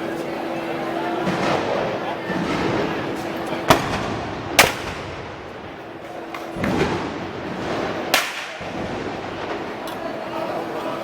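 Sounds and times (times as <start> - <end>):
crowd murmur: 0.0 - 11.0
sharp bangs: 1.2 - 9.8.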